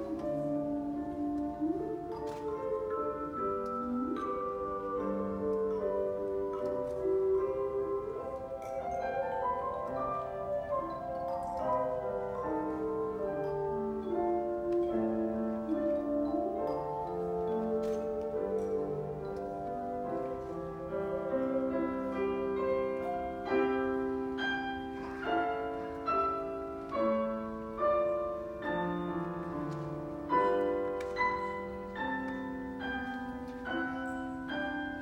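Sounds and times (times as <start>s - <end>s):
wavering theremin melody: 0.0s - 24.5s.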